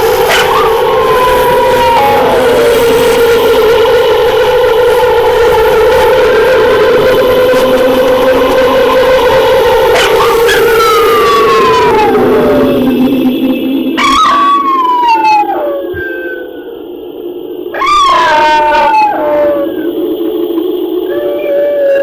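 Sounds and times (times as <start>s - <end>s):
low eerie drone: 0.0s - 22.0s
wolf howling: 0.0s - 22.0s.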